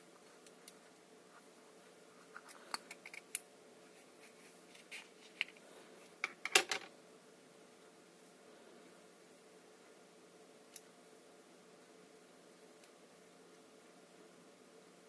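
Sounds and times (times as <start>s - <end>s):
small objects clicking and tapping: 2.4s - 3.5s.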